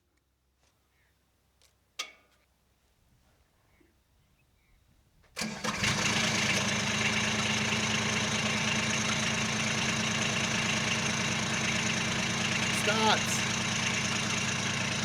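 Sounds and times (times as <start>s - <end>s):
diesel engine starting and idling: 5.4s - 15.0s.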